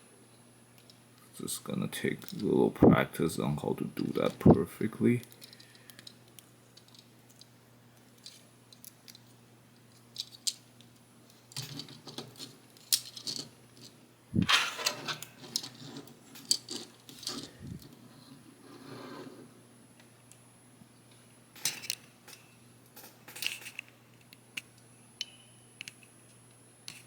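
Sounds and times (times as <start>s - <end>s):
plastic parts clicking and rattling: 5.2s - 18.0s.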